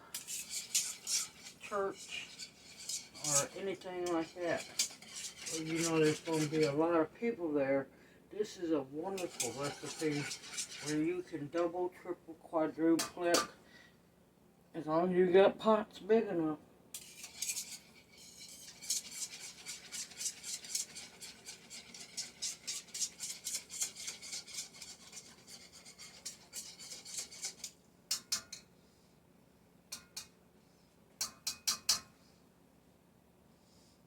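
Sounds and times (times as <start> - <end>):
utensil scraping a wok: 0.0 - 7.0, 8.4 - 11.8, 17.0 - 28.5.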